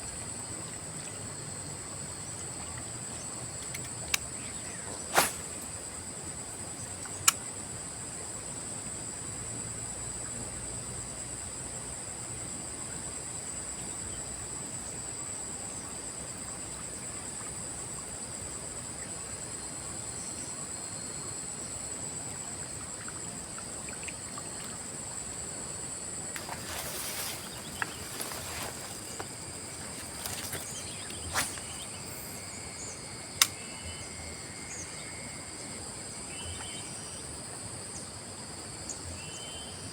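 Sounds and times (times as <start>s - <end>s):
insect chorus shrilling: 3.1s - 7.4s, 24.6s - 38.1s, 38.9s - 39.9s
rustling handling noise: 26.4s - 32.3s.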